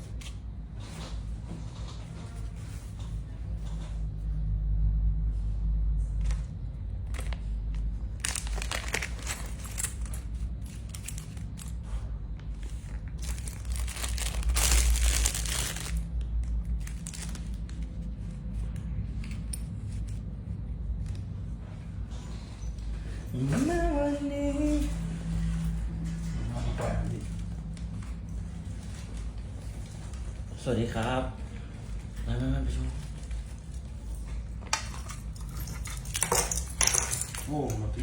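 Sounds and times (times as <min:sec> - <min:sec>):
steady low hum: 0:00.0 - 0:38.0
crinkling handling noise: 0:06.2 - 0:22.2, 0:24.6 - 0:30.7.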